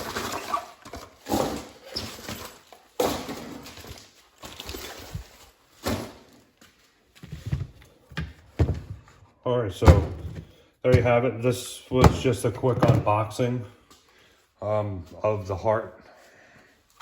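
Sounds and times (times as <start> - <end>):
cardboard packaging rustling: 0.0 - 6.5.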